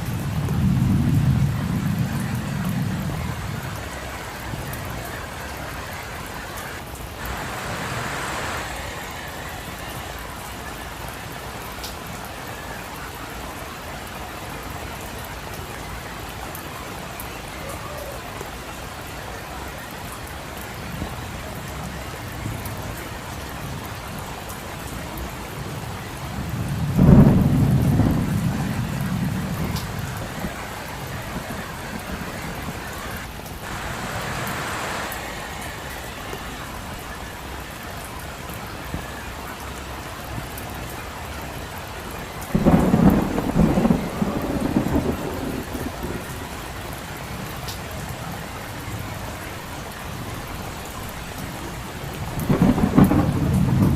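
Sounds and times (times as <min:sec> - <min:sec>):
rumbling thunder: 0:00.0 - 0:06.0, 0:25.7 - 0:35.9, 0:42.5 - 0:47.3, 0:52.0 - 0:53.9
heavy rain on a street: 0:00.0 - 0:53.9.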